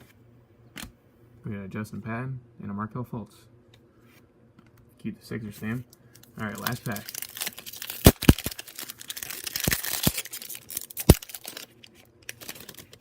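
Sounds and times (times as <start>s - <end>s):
foil pack tearing and crinkling: 6.4s - 13.0s.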